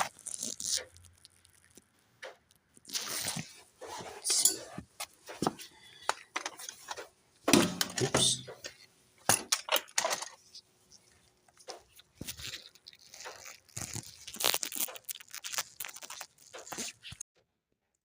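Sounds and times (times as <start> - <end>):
metal clicks and scrapes: 7.7 - 10.6.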